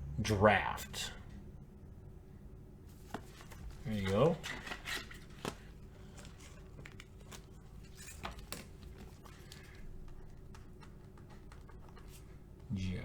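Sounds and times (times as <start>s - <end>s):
faint room hum: 0.0s - 13.0s
trading cards rustling and clicking: 2.9s - 12.7s.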